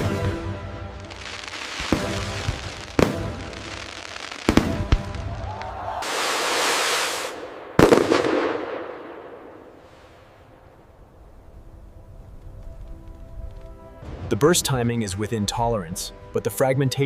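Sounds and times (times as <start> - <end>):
fireworks bangs: 0.0 - 10.6
fireworks crackling hiss: 0.8 - 8.4.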